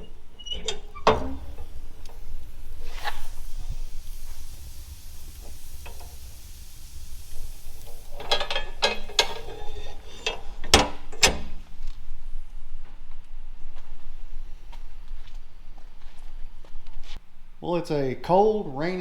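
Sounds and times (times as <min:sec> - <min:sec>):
rattling mechanical clicks: 0:00.0 - 0:11.8.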